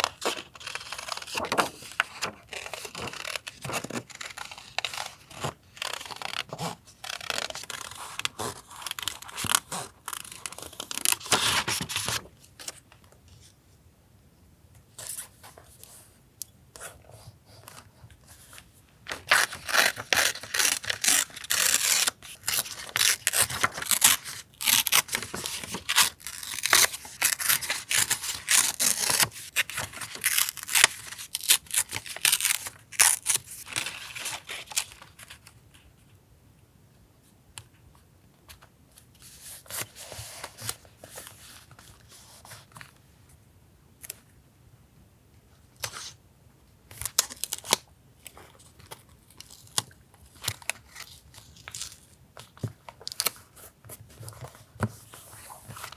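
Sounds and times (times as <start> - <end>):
paper tearing and rustling: 0.0 - 12.3, 19.1 - 34.8.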